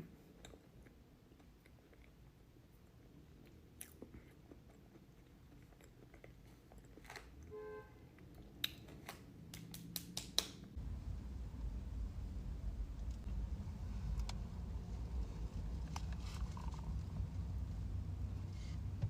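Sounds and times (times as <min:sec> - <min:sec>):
person chewing pastry: 0:00.2 - 0:07.5
steady low rumble: 0:10.7 - 0:19.0.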